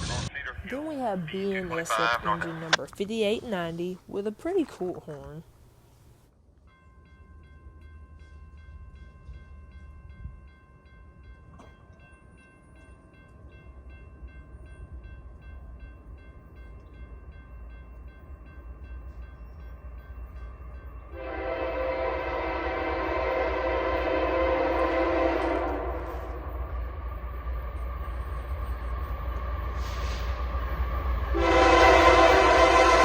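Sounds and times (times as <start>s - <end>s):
locomotive air horn chord: 21.1s - 26.7s, 31.3s - 33.0s.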